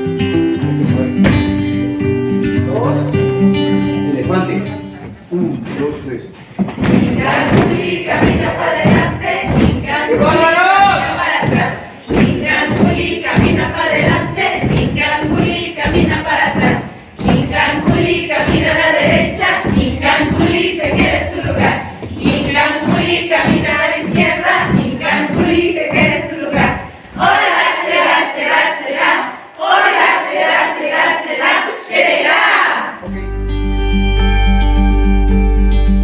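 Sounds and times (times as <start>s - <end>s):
low thumping beat: 6.6s - 26.8s
group chanting in unison: 7.0s - 33.0s.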